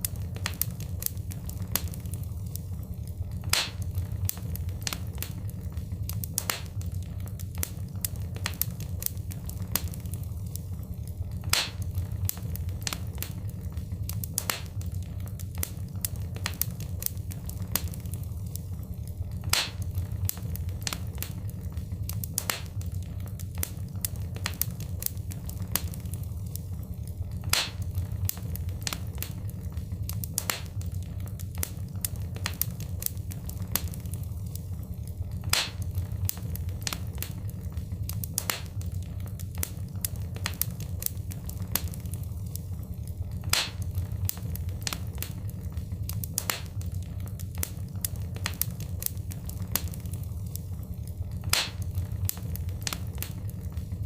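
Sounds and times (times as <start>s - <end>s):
wood fire crackling: 0.0s - 54.0s
loud fire pop: 3.5s - 3.8s, 11.5s - 11.8s, 19.5s - 19.8s, 27.5s - 27.8s, 35.5s - 35.8s, 43.5s - 43.9s, 51.5s - 51.9s.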